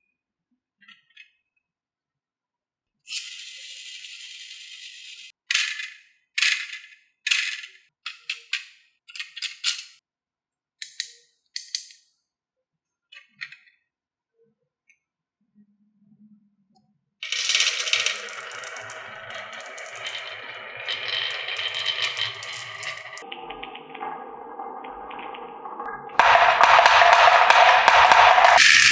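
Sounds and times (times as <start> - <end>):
marbles rolling on wood: 17.2 - 23.2, 26.2 - 28.9
marbles clacking: 28.6 - 28.9.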